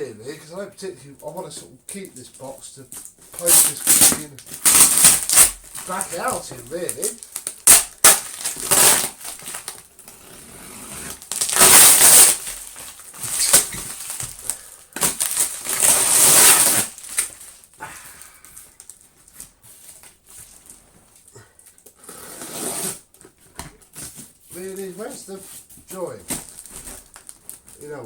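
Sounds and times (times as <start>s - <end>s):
cardboard rustling: 2.2s - 17.8s, 18.4s - 22.0s, 22.7s - 28.0s
cardboard scraping and crunching: 3.4s - 14.5s, 23.9s - 28.0s.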